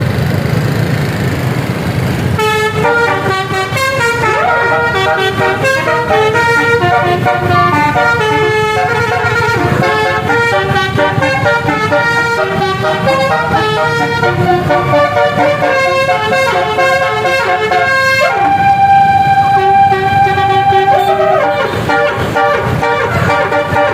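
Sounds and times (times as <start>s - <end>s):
bus engine rumble: 0.0s - 23.9s
multi-tone bus horn melody: 2.3s - 23.9s.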